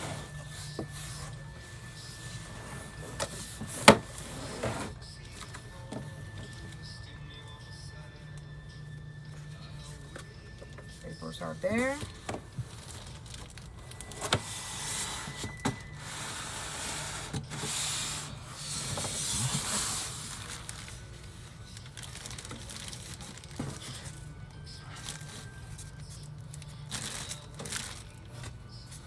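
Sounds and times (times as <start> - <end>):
paper rubbing and rustling: 0.0 - 5.4, 12.1 - 29.0.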